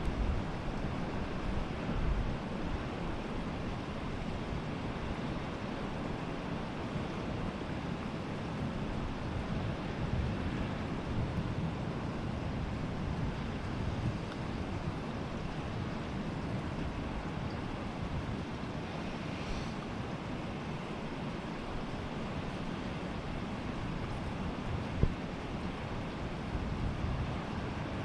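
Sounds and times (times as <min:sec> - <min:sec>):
sea waves: 0:00.1 - 0:28.0
wind buffeting microphone: 0:08.6 - 0:28.0.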